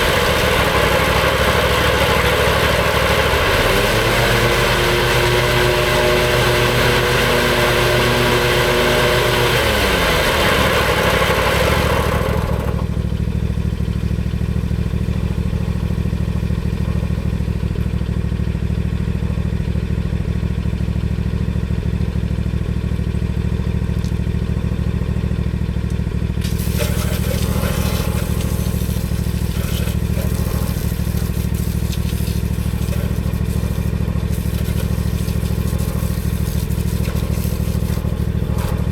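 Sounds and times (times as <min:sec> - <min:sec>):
lawn mower engine running: 0:00.0 - 0:38.9
rattling hiss: 0:26.4 - 0:38.4.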